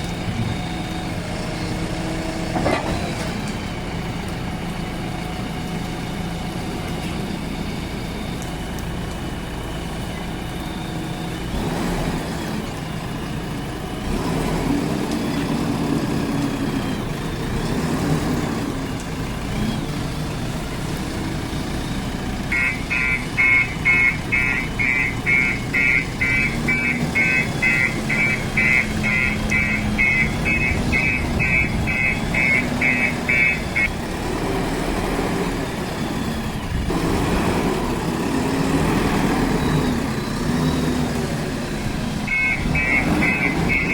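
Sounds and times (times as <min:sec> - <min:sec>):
diesel engine running: 0:00.0 - 0:43.9
reversing beeper: 0:22.5 - 0:34.0, 0:42.2 - 0:43.9.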